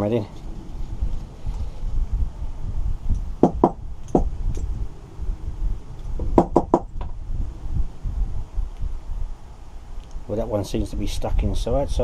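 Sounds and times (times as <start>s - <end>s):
knocks on carburettor: 3.4s - 4.3s, 6.2s - 7.1s.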